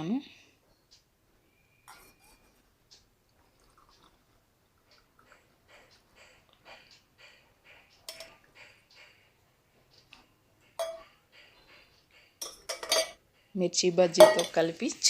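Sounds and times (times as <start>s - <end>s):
cups clinking: 8.1s - 8.5s, 10.8s - 11.2s, 12.4s - 13.2s, 14.2s - 14.7s.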